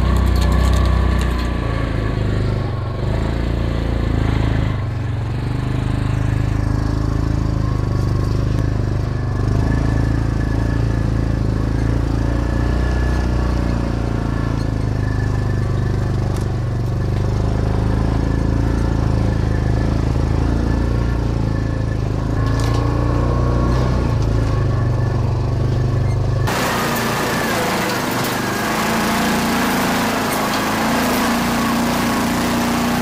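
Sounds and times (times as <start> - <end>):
utility vehicle engine droning: 0.0 - 33.0
higher-pitched engine noise: 26.4 - 33.0.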